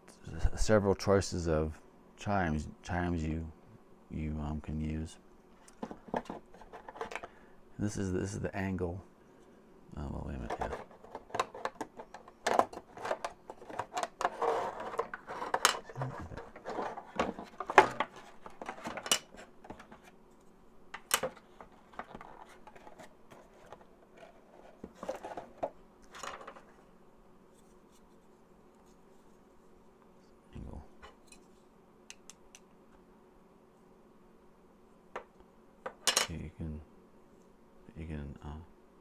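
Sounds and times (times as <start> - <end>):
plastic parts clicking and knocking: 5.7 - 7.3, 10.4 - 20.1, 21.0 - 26.7
packaging rustling: 10.4 - 20.0.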